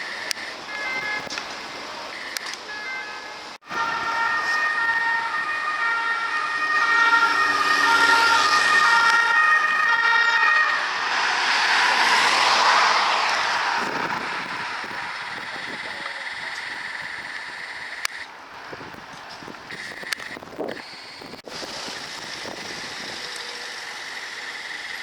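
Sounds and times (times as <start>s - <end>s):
two-tone police siren: 0.0s - 18.3s
road noise rushing: 0.0s - 25.0s.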